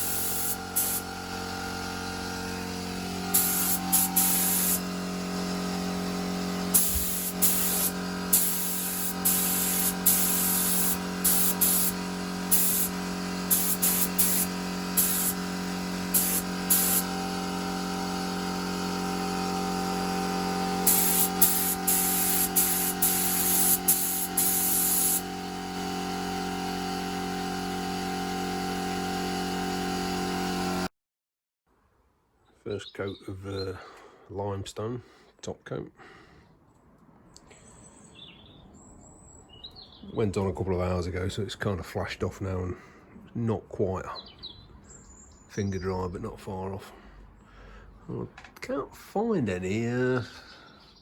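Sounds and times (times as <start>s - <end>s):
paint spray hissing bursts: 0.0s - 25.5s
steady motor hum: 0.0s - 30.9s.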